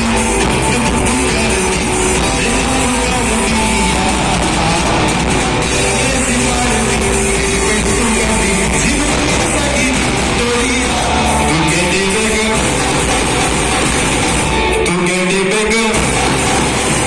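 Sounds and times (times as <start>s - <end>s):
live rock band: 0.0s - 17.0s
person singing: 0.0s - 17.0s.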